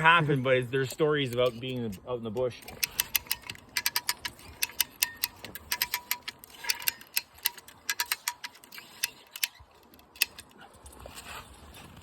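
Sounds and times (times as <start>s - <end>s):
ratcheting cable puller clicking: 1.2s - 10.6s.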